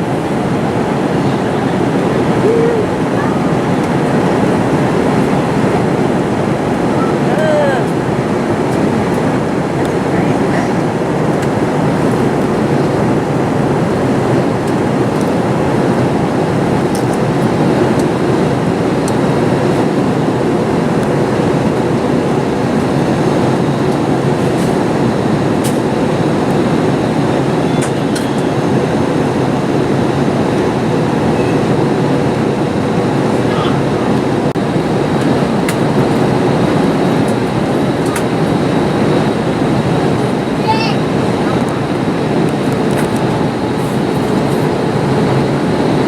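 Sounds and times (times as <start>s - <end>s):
engine and airflow rush: 0.0s - 46.0s.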